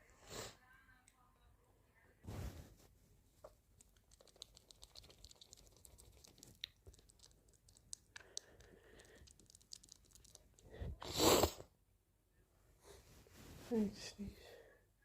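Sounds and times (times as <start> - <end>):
small clicks and ticks: 3.8 - 10.7.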